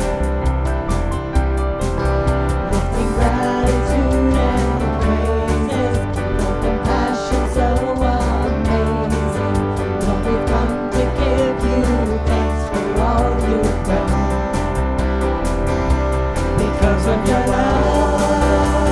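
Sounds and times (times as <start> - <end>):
worship band playing: 0.0 - 18.9
person singing: 2.7 - 14.9, 16.4 - 18.9.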